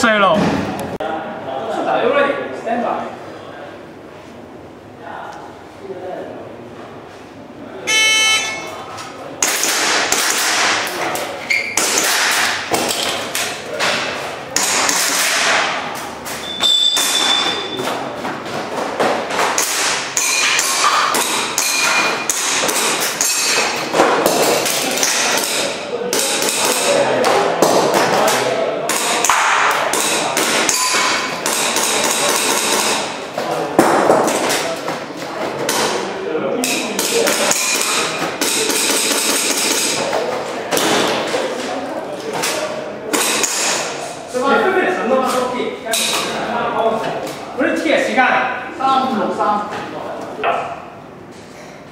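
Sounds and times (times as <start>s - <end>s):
ringing pings: 7.9s - 8.8s, 30.7s - 31.2s.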